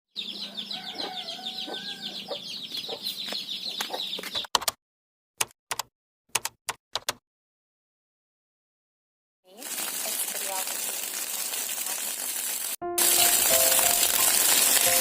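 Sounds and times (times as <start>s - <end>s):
chickens clucking: 0.2s - 4.4s.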